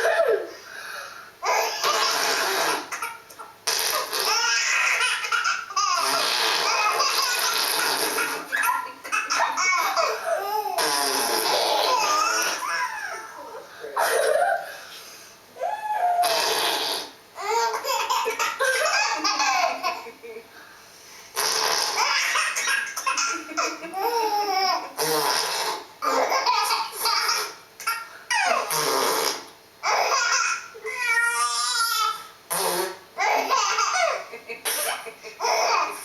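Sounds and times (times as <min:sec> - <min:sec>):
baby laughing: 0:01.4 - 0:14.8, 0:17.4 - 0:20.3, 0:21.4 - 0:25.4, 0:26.0 - 0:28.8, 0:29.8 - 0:32.3, 0:33.2 - 0:36.0.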